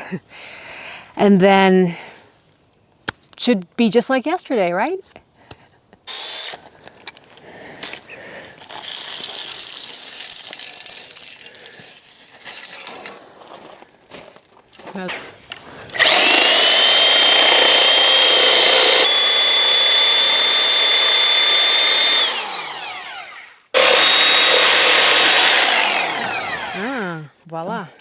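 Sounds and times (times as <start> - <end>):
reciprocating saw cutting wood: 6.1 - 6.6, 15.1 - 27.1.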